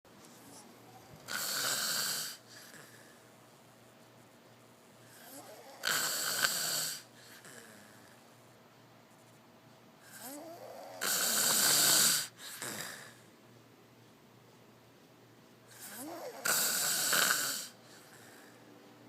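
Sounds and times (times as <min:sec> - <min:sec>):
quiet breathing: 0:00.2 - 0:08.5, 0:09.1 - 0:13.5, 0:15.5 - 0:18.9
loud breathy snores: 0:01.2 - 0:03.2, 0:05.1 - 0:08.2, 0:10.0 - 0:13.2, 0:15.7 - 0:18.6.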